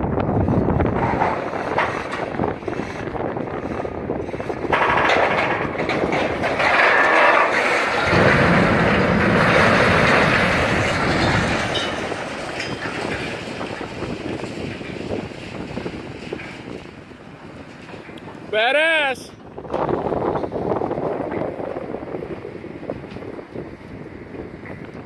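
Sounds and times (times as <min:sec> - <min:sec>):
deep rumble: 0:00.0 - 0:18.5
wall crashing and grinding: 0:00.2 - 0:18.5.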